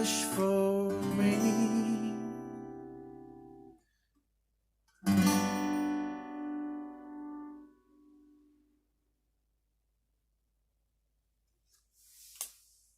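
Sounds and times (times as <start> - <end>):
acoustic guitar chords: 0.0 - 3.8, 5.0 - 8.8.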